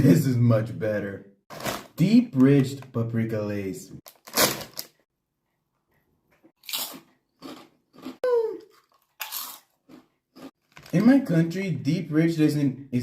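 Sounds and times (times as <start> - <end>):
potato chips crunching: 6.6 - 11.2.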